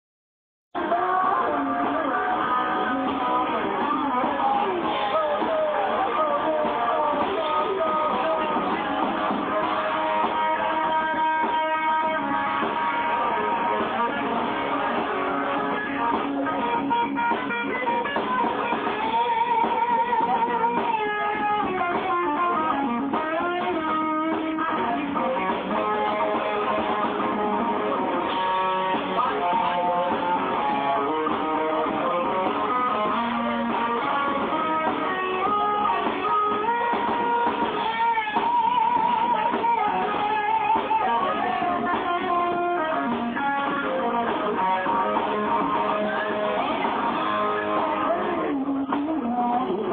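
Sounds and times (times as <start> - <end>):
electric guitar: 0.7 - 49.9
live band playing: 0.7 - 49.9.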